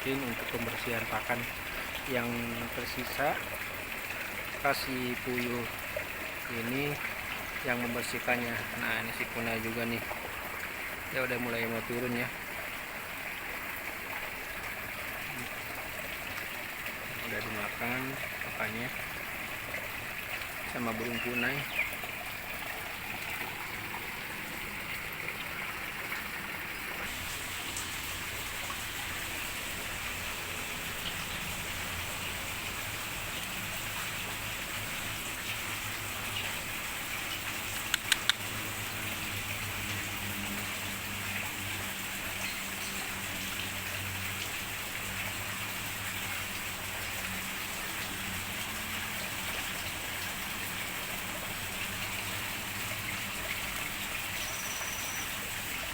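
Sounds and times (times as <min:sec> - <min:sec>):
running water splashing: 0:00.0 - 0:55.9
sharp clicks: 0:37.9 - 0:38.5.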